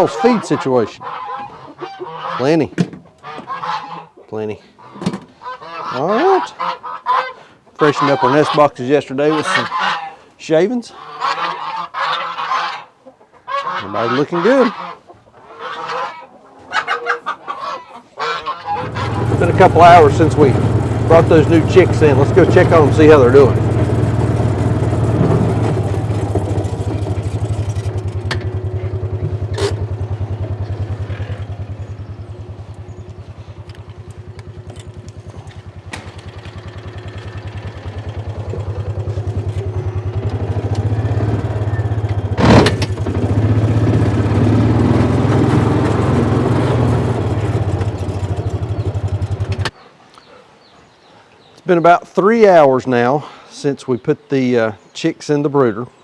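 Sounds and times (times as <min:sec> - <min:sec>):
vehicle engine running: 0:18.7 - 0:49.7.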